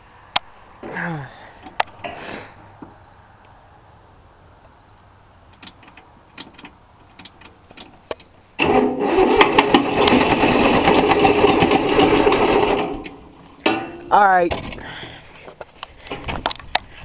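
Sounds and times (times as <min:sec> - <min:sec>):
starter motor cranking diesel engine: 0:08.6 - 0:13.4.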